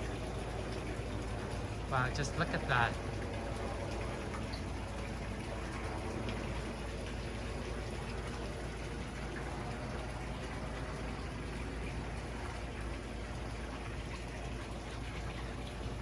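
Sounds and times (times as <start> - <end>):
water splashing into pond: 0.0 - 16.0.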